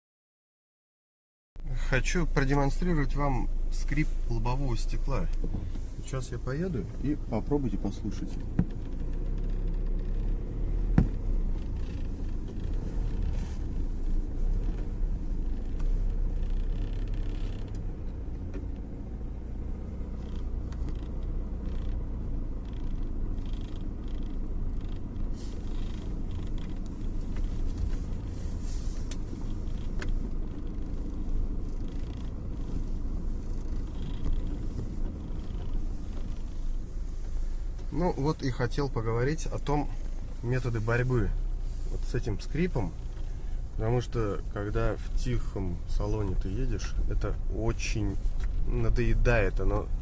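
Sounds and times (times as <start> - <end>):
road and engine rumble: 1.6 - 50.0
windshield seal creaking: 7.8 - 37.9.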